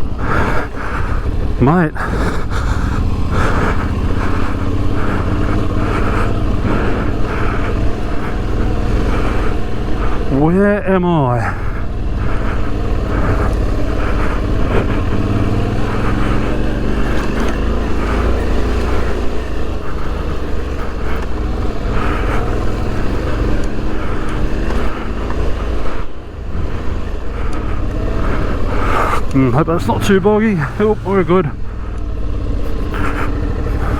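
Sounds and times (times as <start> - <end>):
motorcycle engine under throttle: 0.0 - 33.9.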